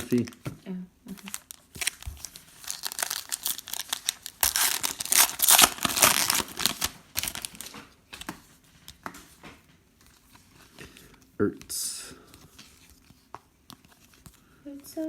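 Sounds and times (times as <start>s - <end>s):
foil wrapper crinkling and tearing: 1.1s - 7.9s.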